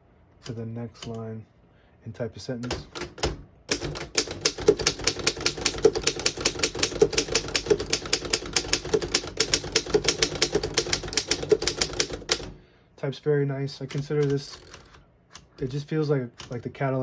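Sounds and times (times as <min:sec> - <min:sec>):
manual typewriter typing: 0:02.6 - 0:12.6, 0:13.8 - 0:16.9.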